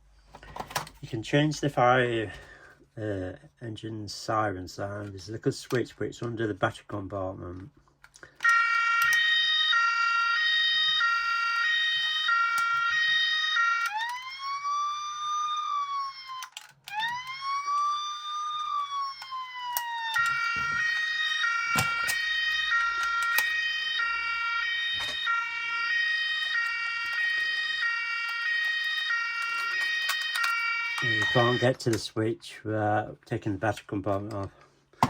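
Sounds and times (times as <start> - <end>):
toy fire engine siren: 8.3 - 31.8.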